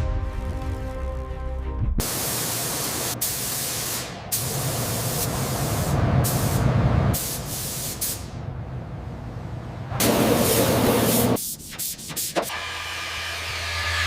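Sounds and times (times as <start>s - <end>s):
pressurized spray hissing: 2.0s - 8.3s.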